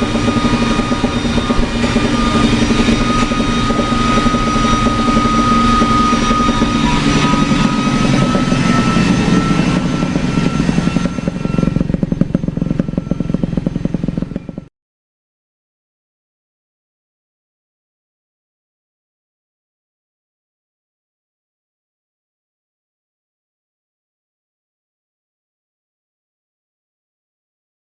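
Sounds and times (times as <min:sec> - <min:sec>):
two-stroke motorcycle engine buzzing: 0:00.0 - 0:14.7.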